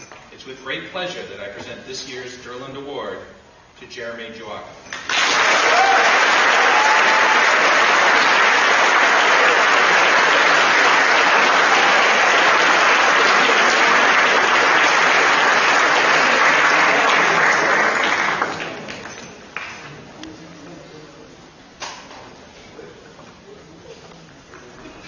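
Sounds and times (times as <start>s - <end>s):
audience applauding: 5.0s - 19.8s.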